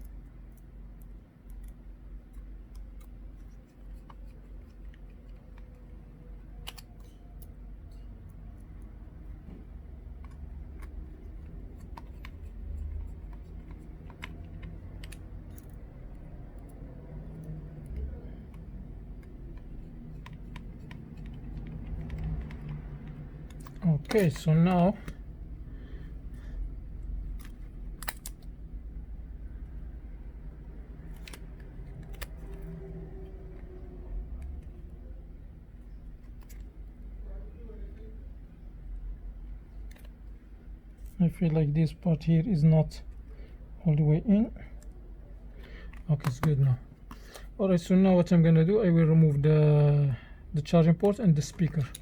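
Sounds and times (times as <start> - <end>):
low steady hum: 0.0 - 52.0
clicks and taps of small tools: 10.2 - 15.8, 17.4 - 25.2.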